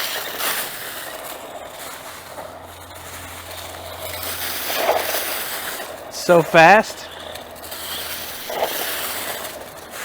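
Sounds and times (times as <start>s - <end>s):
remote-control truck driving: 0.0s - 5.8s.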